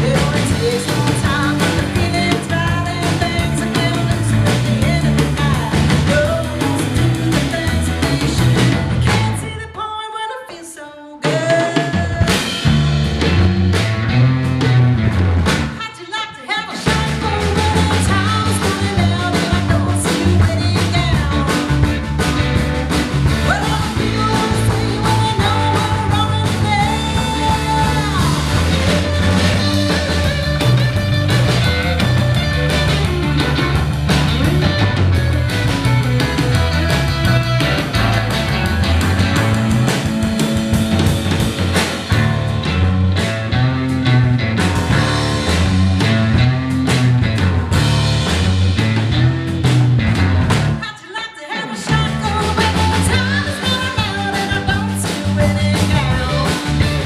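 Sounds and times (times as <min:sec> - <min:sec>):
live rock band playing: 0:00.0 - 0:09.8, 0:11.2 - 0:57.0
person singing: 0:00.0 - 0:12.7, 0:15.8 - 0:22.0, 0:23.3 - 0:33.6, 0:50.8 - 0:57.0.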